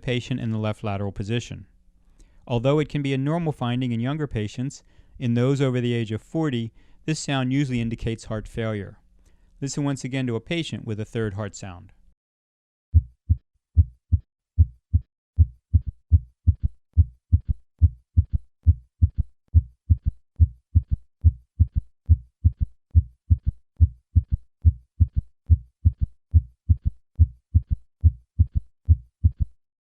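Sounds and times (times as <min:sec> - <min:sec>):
heartbeat gallop rhythm: 0:12.9 - 0:29.6.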